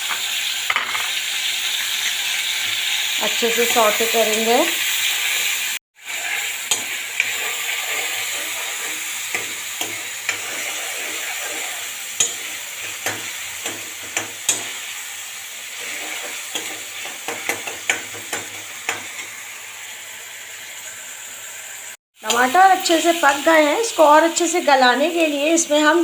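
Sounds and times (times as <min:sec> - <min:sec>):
tomatoes sizzling in hot oil: 0:00.0 - 0:26.0
spoon clicking and scraping pan: 0:06.6 - 0:14.9, 0:15.8 - 0:19.2.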